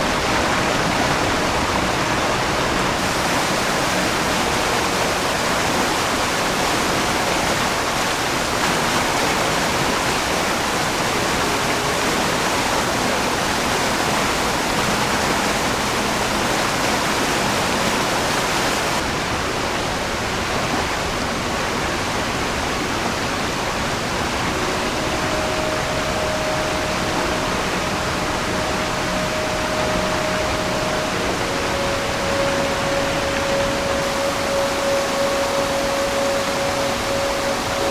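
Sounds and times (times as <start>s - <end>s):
faint steady tone: 0.0s - 19.0s, 23.5s - 37.9s
stream water rushing: 0.0s - 37.9s.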